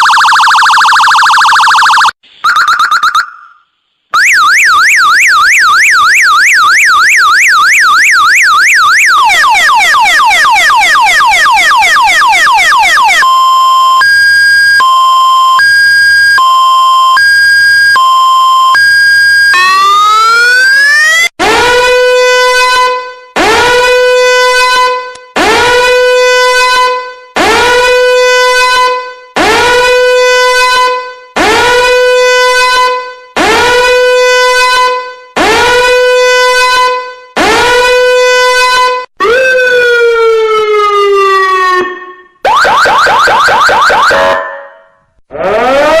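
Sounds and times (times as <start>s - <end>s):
electronic siren: 0.0s - 46.0s.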